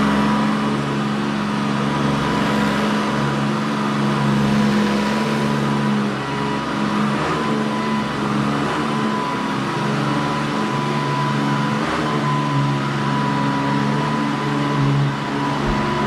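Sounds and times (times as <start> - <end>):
vacuum cleaner running on carpet: 0.0 - 16.0.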